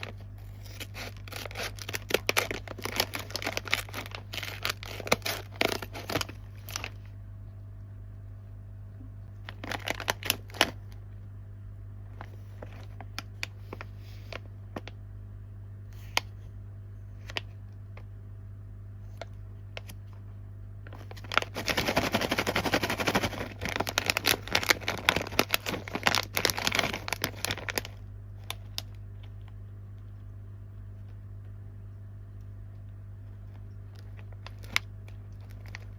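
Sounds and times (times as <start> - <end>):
plastic wrapper crinkling: 0.0 - 7.4, 9.2 - 11.2, 20.8 - 31.5, 32.8 - 35.9
steady low hum: 0.0 - 35.9.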